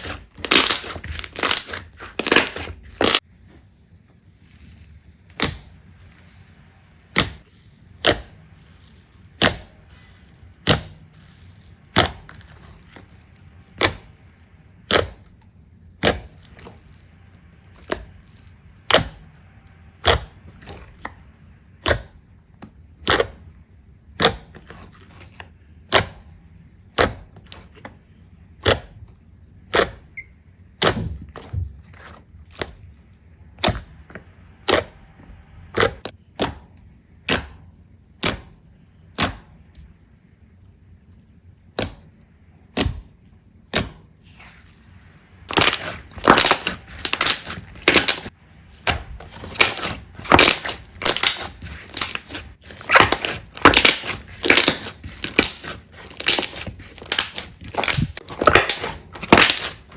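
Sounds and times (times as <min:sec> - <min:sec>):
slime crunching crackles: 0:00.0 - 0:03.2, 0:45.4 - 0:59.9
slime popping: 0:45.5 - 0:48.3, 0:49.4 - 0:59.9.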